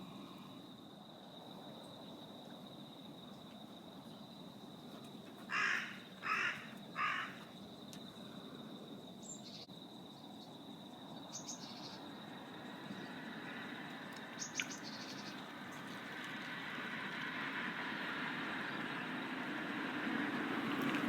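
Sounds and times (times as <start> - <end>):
crow cawing: 5.5 - 7.5.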